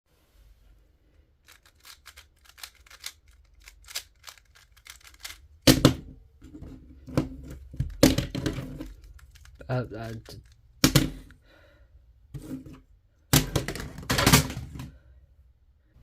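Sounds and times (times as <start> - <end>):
cube puzzle plastic clicks: 1.4 - 5.7, 7.6 - 11.4.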